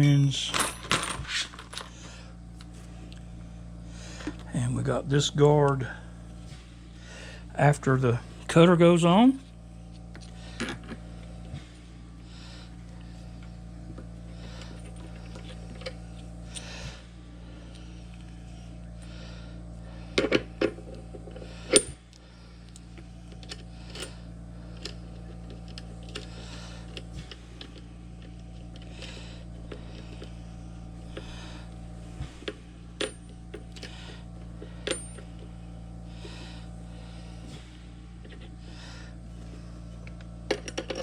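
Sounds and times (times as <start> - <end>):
low hum: 0.0 - 41.0
metal parts and tools clinking: 40.5 - 41.0.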